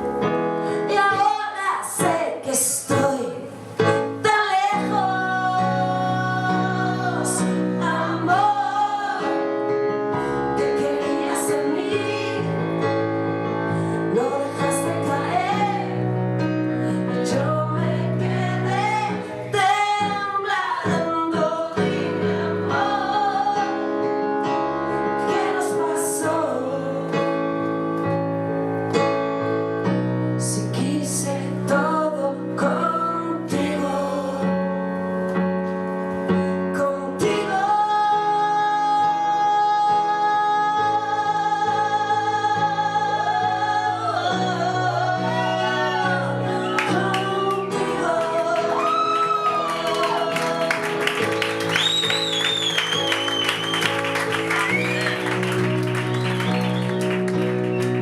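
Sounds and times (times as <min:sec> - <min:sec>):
woman singing: 0:00.8 - 0:09.6, 0:10.2 - 0:12.8, 0:14.0 - 0:24.1, 0:25.2 - 0:27.3, 0:30.4 - 0:34.8, 0:36.6 - 0:51.2
live band music: 0:50.0 - 0:58.0.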